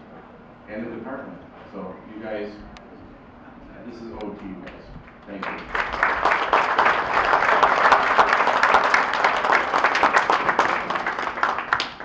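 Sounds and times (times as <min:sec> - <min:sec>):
audience applauding: 0:05.4 - 0:12.0.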